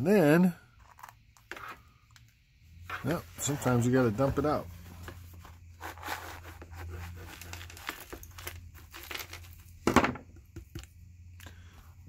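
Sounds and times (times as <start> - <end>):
small debris rustling and clattering: 7.3 - 10.9.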